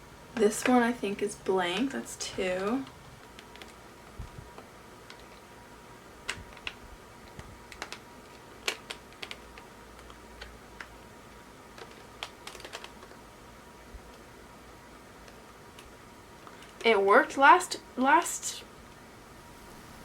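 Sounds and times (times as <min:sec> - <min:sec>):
plastic cassettes clicking: 0:02.6 - 0:03.8, 0:04.5 - 0:05.5, 0:06.2 - 0:11.0, 0:11.7 - 0:13.2.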